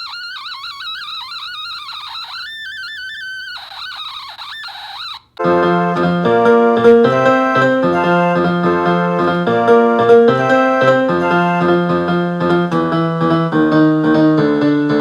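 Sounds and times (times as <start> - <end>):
keyboard music with chords: 5.4 - 15.0.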